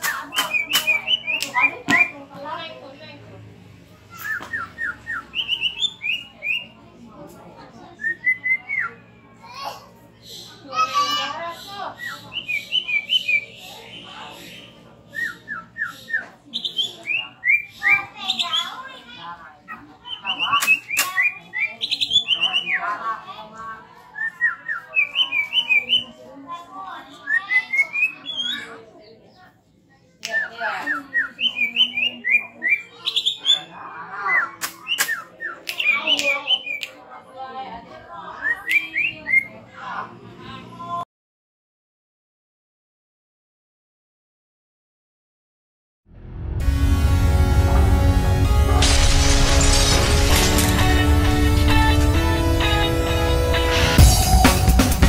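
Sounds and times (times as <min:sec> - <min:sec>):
bird singing whistled notes: 0:15.1 - 0:18.7
sharp whip-like bird cracks: 0:34.6 - 0:35.2.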